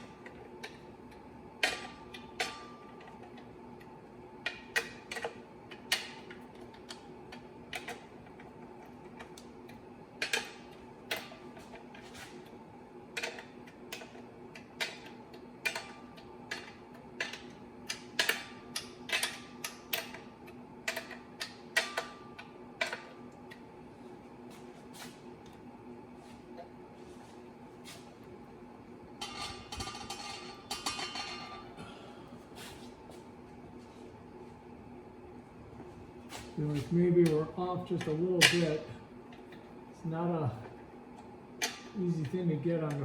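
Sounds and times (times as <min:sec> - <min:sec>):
steady background hum: 0:00.0 - 0:43.0.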